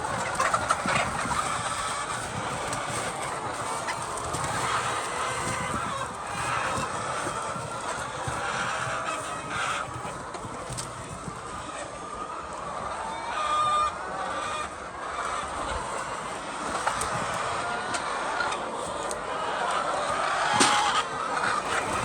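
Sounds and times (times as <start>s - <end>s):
chickens clucking: 0.0s - 22.0s
loud drawn-out chicken call: 19.3s - 22.0s.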